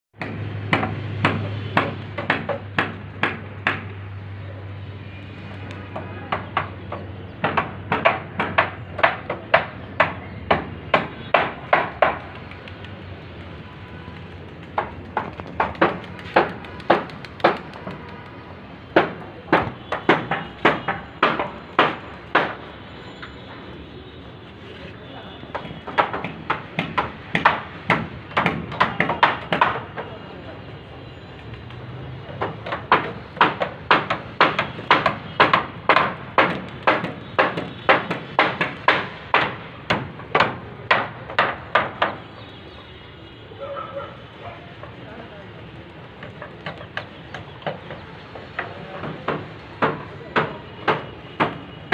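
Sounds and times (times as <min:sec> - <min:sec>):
sharp knocks: 0:00.2 - 0:03.9, 0:19.0 - 0:22.6, 0:25.6 - 0:29.8, 0:32.4 - 0:42.2.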